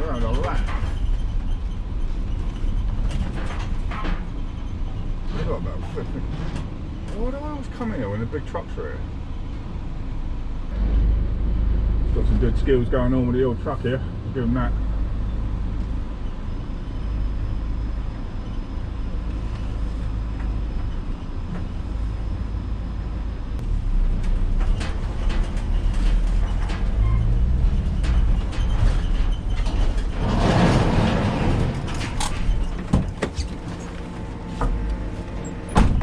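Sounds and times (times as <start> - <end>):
vehicle engine humming: 0.0 - 36.0.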